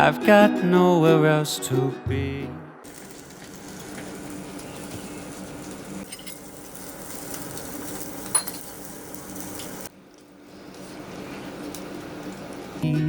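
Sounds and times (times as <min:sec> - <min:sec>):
tableware clinking: 0:06.0 - 0:06.9, 0:07.9 - 0:08.8.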